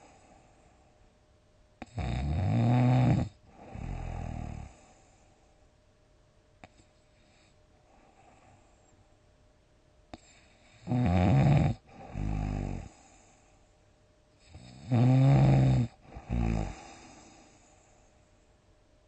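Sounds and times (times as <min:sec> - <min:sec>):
person snoring loudly: 0:01.8 - 0:04.8, 0:10.8 - 0:13.0, 0:14.5 - 0:17.4.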